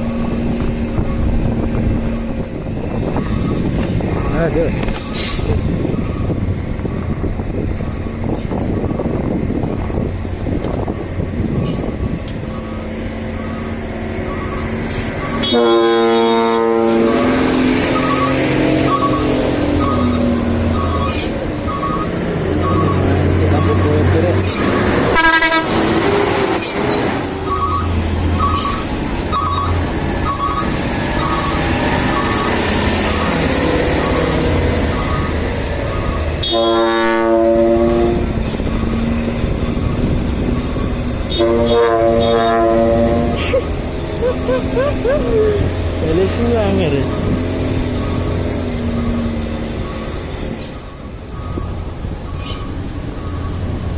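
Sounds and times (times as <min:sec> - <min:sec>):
diesel engine running: 0:00.0 - 0:53.9
air horn blast: 0:15.4 - 0:17.6, 0:25.1 - 0:25.9, 0:36.4 - 0:38.3, 0:41.3 - 0:43.6.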